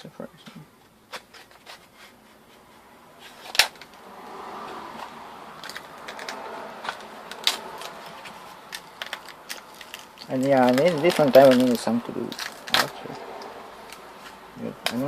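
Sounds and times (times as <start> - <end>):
faint steady noise: 0.0 - 15.0
plastic snapping: 5.6 - 15.0.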